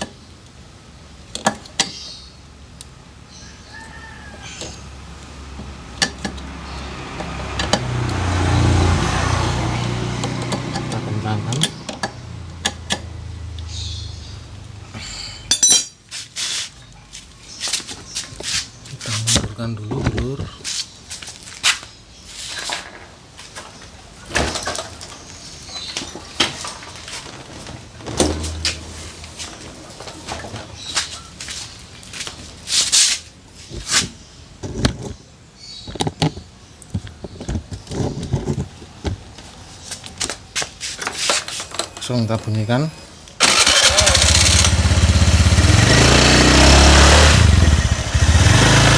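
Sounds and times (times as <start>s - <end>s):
short scraping noises: 16.1s - 16.8s, 32.6s - 34.2s
knocks and clatters of tools: 22.5s - 31.2s, 35.9s - 39.2s, 40.2s - 42.1s
scooter engine idling: 43.4s - 48.9s.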